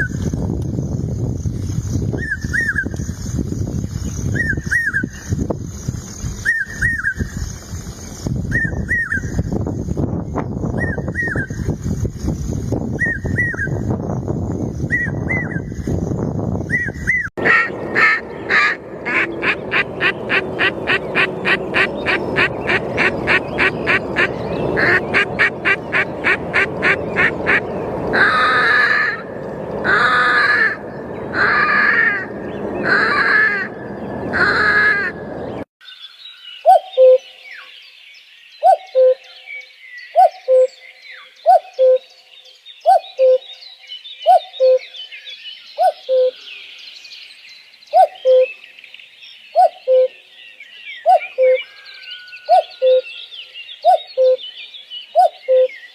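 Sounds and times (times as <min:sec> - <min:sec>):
ducks quacking: 0:17.4 - 0:35.2
cuckoo calling: 0:36.6 - 0:37.7, 0:38.6 - 0:39.4, 0:40.2 - 0:42.2, 0:42.9 - 0:43.6, 0:44.2 - 0:45.0, 0:45.8 - 0:46.6, 0:47.9 - 0:48.6, 0:49.6 - 0:50.3, 0:51.0 - 0:55.9.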